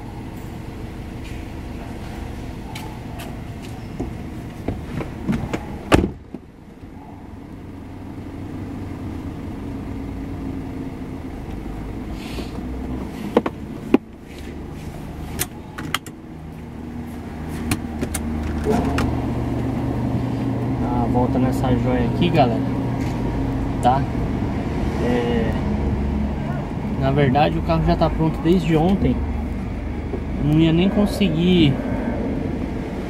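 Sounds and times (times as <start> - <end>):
car engine and road drone: 0.0 - 33.0.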